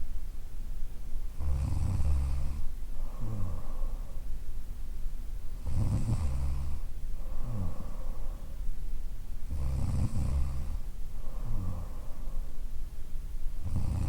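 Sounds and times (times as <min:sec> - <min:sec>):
woman snoring: 0:01.4 - 0:03.9, 0:05.6 - 0:08.1, 0:09.5 - 0:10.8, 0:11.4 - 0:12.1, 0:13.6 - 0:14.0.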